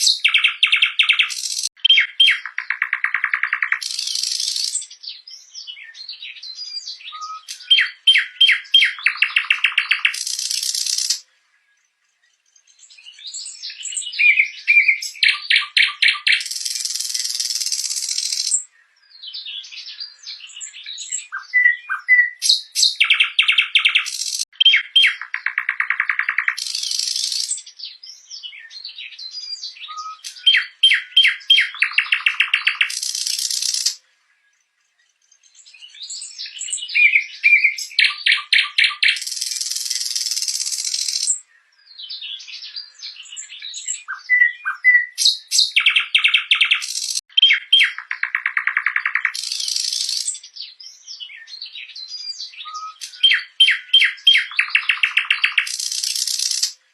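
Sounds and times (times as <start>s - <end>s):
nightingale singing: 0.0s - 56.9s.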